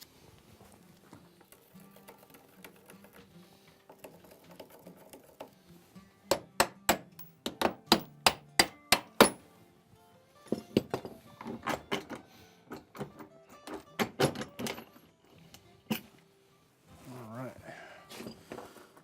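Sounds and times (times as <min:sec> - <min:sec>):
background music: 0:00.0 - 0:19.0
hammer striking: 0:06.3 - 0:09.5.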